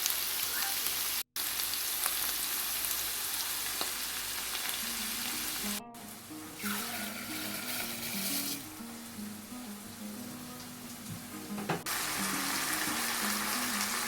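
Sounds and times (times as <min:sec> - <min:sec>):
food sizzling in a pan: 0:00.0 - 0:14.0
background music: 0:04.8 - 0:14.0.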